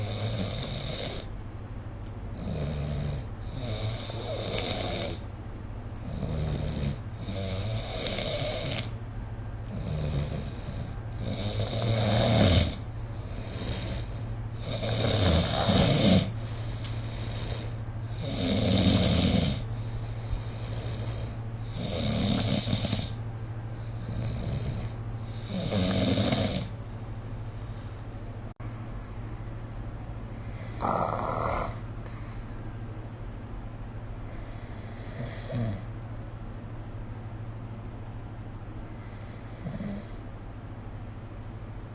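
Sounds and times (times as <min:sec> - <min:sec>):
person snoring: 0:00.0 - 0:01.3, 0:02.3 - 0:05.2, 0:06.0 - 0:09.0, 0:09.7 - 0:26.8, 0:30.5 - 0:32.4, 0:34.3 - 0:35.9, 0:39.0 - 0:40.2
steady low hum: 0:00.0 - 0:41.9.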